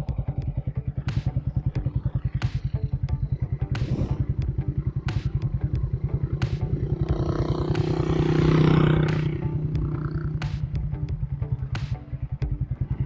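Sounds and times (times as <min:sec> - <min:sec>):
louder fuller engine sound: 0:00.0 - 0:13.0
motorcycle engine idling: 0:00.0 - 0:13.0.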